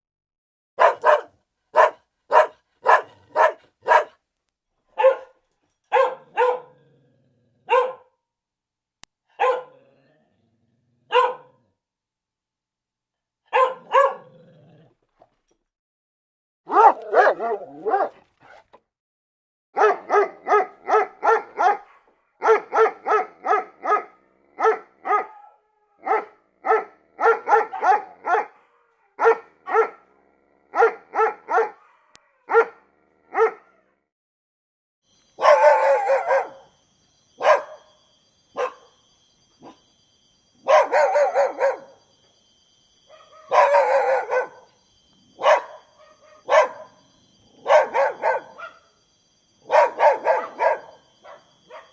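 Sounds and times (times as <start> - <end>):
dogs barking: 0.8 - 4.2, 5.0 - 6.9, 7.6 - 8.1, 9.3 - 9.8, 11.1 - 11.6, 13.5 - 14.4, 16.7 - 18.8, 19.8 - 30.1, 30.7 - 33.8, 35.4 - 36.7, 37.4 - 37.9, 38.6 - 39.0, 39.6 - 39.8, 40.6 - 42.0, 43.1 - 44.8, 45.4 - 47.0, 47.6 - 48.9, 49.6 - 51.9
faint high whine: 35.1 - 51.9.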